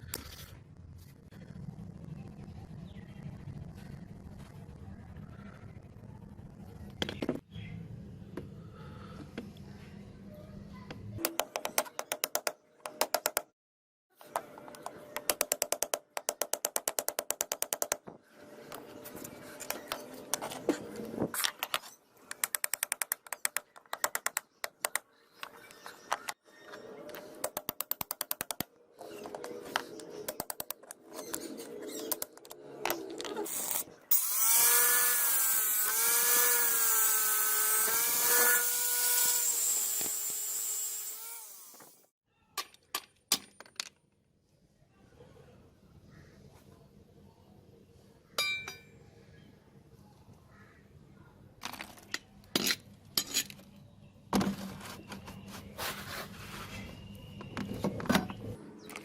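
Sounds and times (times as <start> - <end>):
power tool whining: 33.5 - 42.1.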